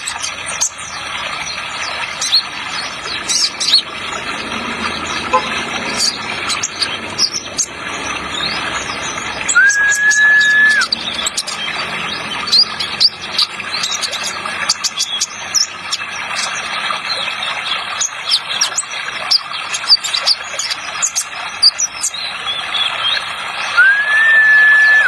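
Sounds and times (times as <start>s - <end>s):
running water: 0.0s - 25.0s
bird chirping rapidly: 1.8s - 16.6s.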